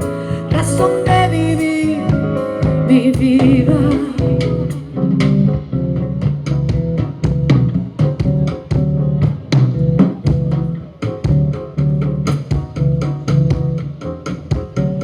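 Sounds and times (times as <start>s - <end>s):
bass line: 0.0s - 15.0s.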